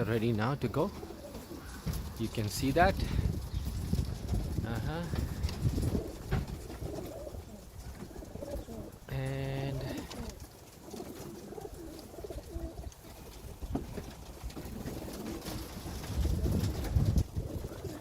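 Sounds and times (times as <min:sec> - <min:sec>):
pigeons cooing: 0:00.0 - 0:18.0.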